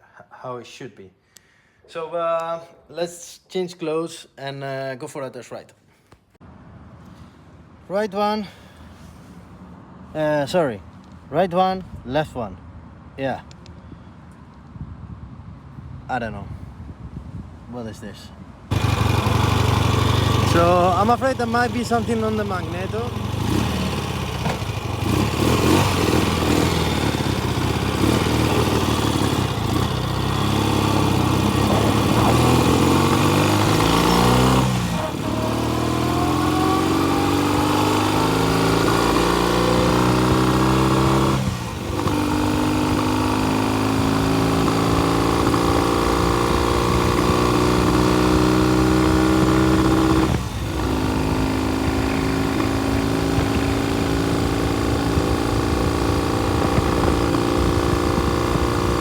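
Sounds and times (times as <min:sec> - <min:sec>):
motorcycle engine under load: 0:18.7 - 0:59.0.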